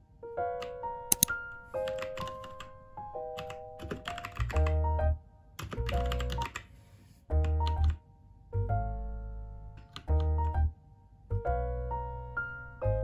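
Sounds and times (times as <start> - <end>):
light piano background music: 0.0 - 13.0
mechanical keyboard key clicks: 1.1 - 2.6.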